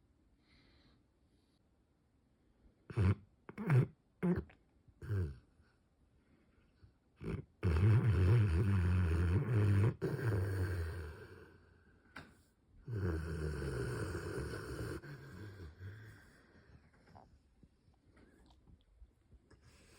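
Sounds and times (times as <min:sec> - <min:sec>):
dog snoring: 0:02.9 - 0:04.4, 0:05.0 - 0:05.4, 0:07.2 - 0:11.6, 0:12.9 - 0:16.8.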